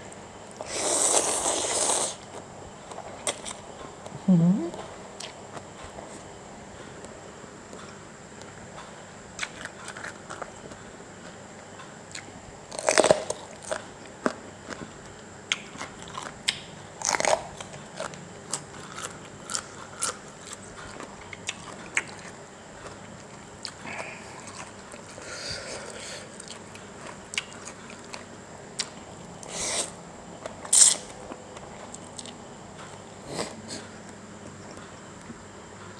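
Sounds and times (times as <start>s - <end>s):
person chewing food: 0.5s - 6.3s, 7.7s - 35.4s.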